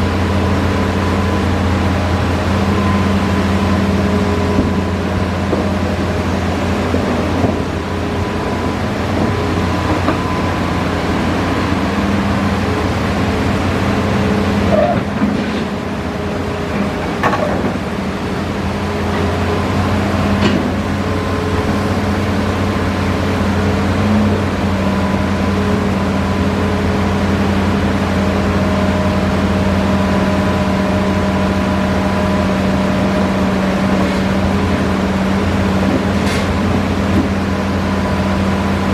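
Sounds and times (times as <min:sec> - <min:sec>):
excavator diesel engine hum: 0:00.0 - 0:38.9.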